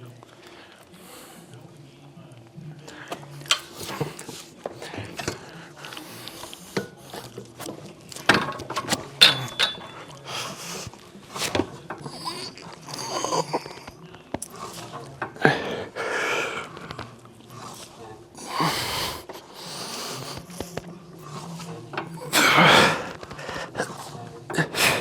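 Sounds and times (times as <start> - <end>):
weight equipment clanking: 8.2 - 10.3.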